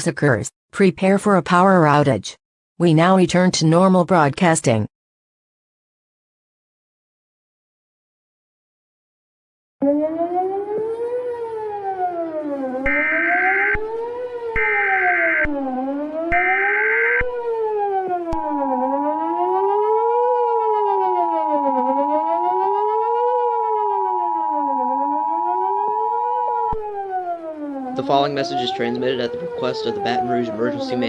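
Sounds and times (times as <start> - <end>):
siren wailing: 9.8 - 31.0.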